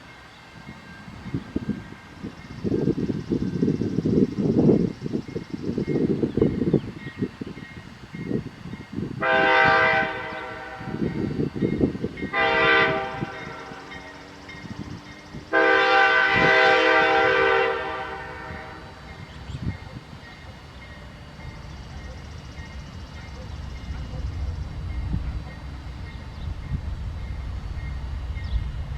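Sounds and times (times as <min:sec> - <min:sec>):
train horn blasts: 0:09.2 - 0:11.4, 0:12.2 - 0:14.8, 0:15.4 - 0:19.2.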